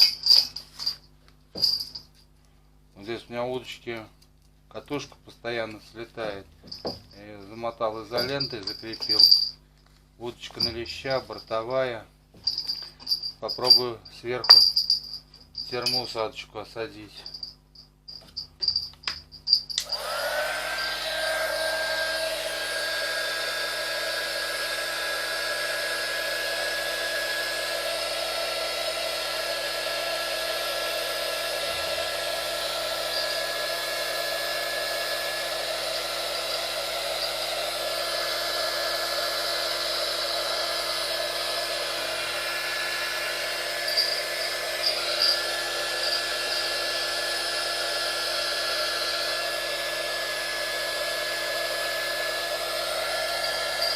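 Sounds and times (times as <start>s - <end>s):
heat gun fan whining: 0.0s - 2.0s, 6.2s - 9.5s, 10.4s - 16.1s, 18.1s - 53.9s.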